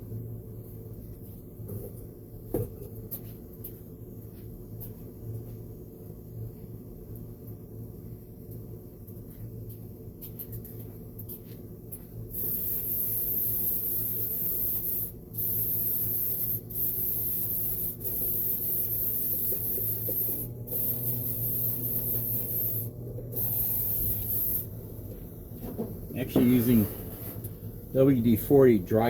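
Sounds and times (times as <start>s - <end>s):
aerosol can spraying: 12.3s - 24.7s.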